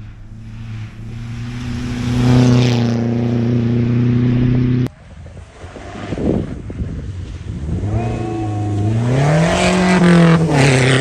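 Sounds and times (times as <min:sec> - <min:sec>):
car engine at high revs: 0:00.0 - 0:04.9, 0:07.3 - 0:11.0.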